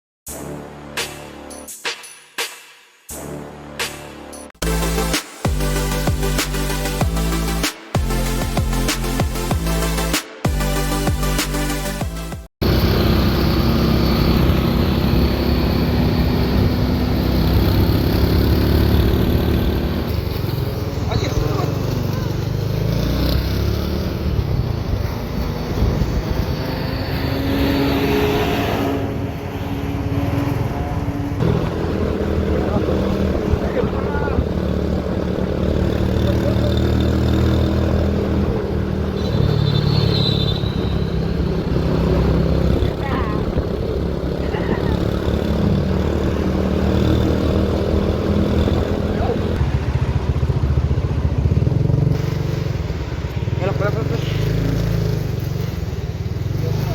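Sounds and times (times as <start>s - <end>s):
road noise: 3.2s - 56.9s
bus engine running: 4.6s - 27.5s, 28.8s - 39.3s, 40.7s - 56.9s
bus engine rumble: 28.8s - 39.3s.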